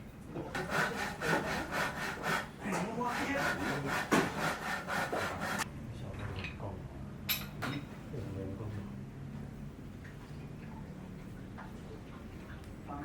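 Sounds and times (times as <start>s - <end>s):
rhythmic rasping strokes: 0.5s - 5.7s.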